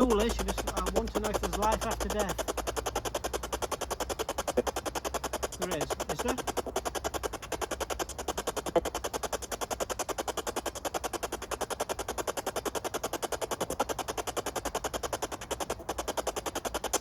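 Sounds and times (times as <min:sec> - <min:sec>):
radio static chopping: 0:00.0 - 0:12.2.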